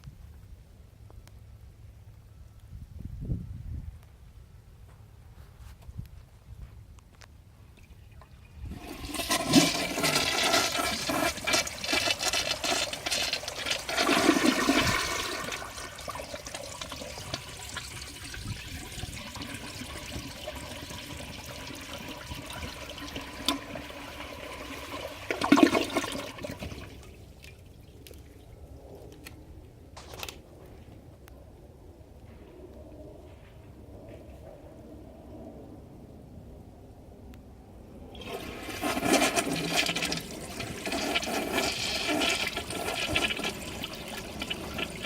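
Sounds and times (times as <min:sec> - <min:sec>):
toilet flushing: 0:08.6 - 0:27.1, 0:38.1 - 0:45.0.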